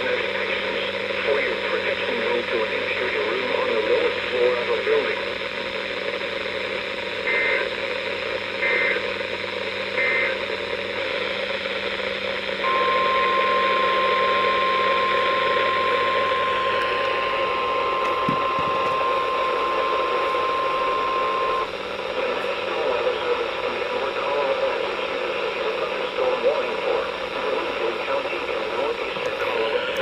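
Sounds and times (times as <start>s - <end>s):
radio hiss: 0.0s - 30.0s
steady warning alarm tone: 0.1s - 24.2s
digital data bursts: 8.6s - 21.7s.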